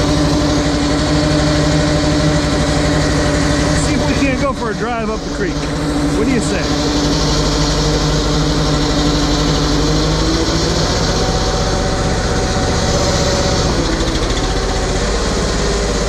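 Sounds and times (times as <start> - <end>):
engine idling: 0.0 - 16.0.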